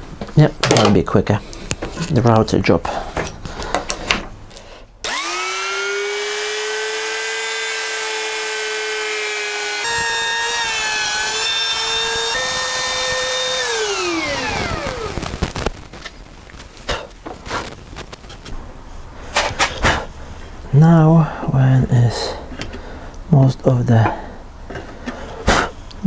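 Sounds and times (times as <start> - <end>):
electric router whining: 5.0 - 15.7.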